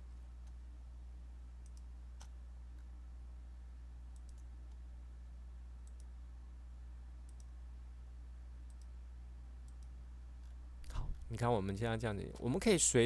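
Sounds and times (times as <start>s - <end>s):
low electrical hum: 0.0s - 13.0s
computer mouse clicks: 1.6s - 2.9s, 4.1s - 4.8s, 5.8s - 6.2s, 7.3s - 7.6s, 8.7s - 9.0s, 9.6s - 11.0s.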